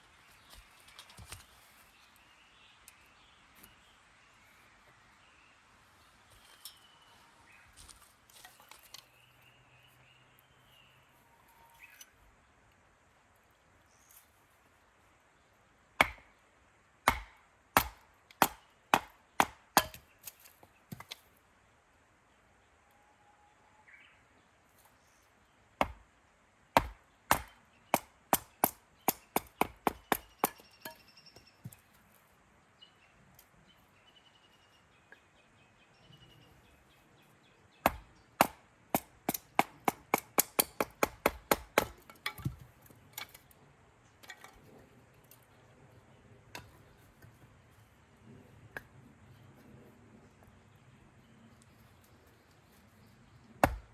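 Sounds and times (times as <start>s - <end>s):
firewood chopping strikes: 16.0s - 16.4s, 17.0s - 21.2s, 25.8s - 26.1s, 26.8s - 31.0s, 37.8s - 42.6s, 53.6s - 53.9s.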